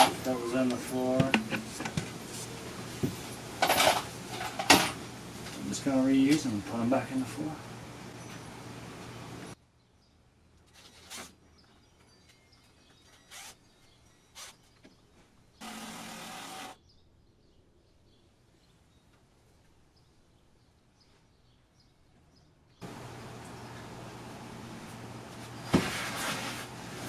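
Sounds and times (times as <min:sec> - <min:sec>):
power drill driving screws: 0:15.6 - 0:16.8.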